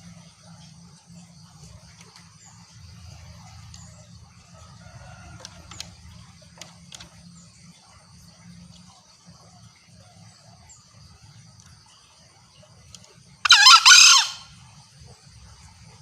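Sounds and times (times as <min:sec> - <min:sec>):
junglefowl short sharp calls: 0:13.4 - 0:14.5.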